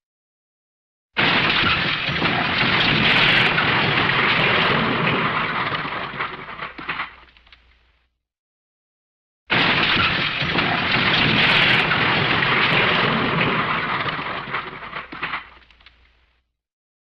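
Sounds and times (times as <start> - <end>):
loud rumbling crash: 1.2 - 6.8, 9.5 - 15.6
scattered crackles: 1.2 - 8.1, 9.5 - 16.5.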